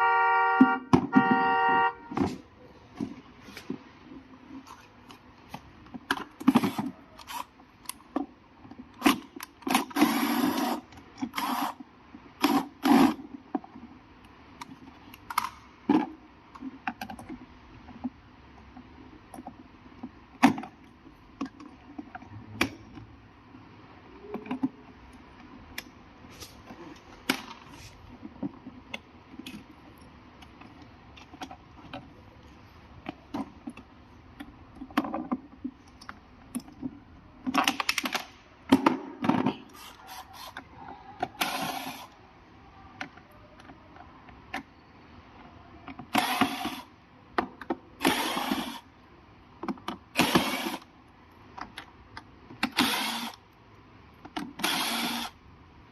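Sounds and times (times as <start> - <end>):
clicks and rattles of tools: 33.0 - 42.2.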